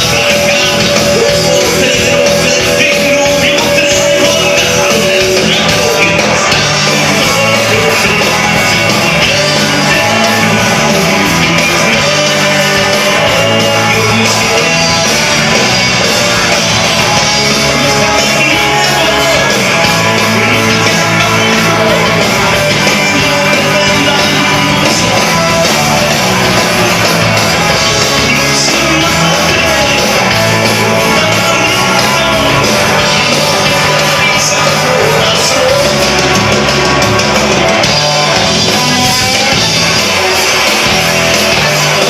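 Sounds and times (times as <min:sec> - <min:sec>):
live rock band: 0:00.0 - 0:42.0
person singing: 0:00.0 - 0:42.0.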